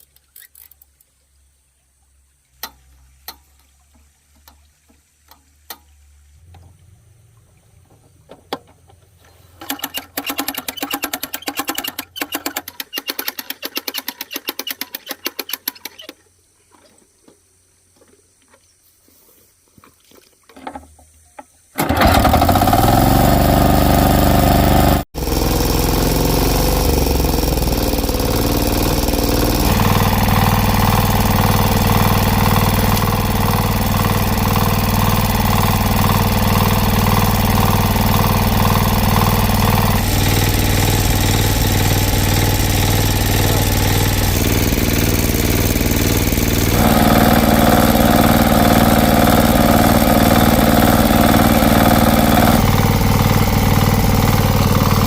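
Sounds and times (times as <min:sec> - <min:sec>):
engine running: 0:21.8 - 0:55.0.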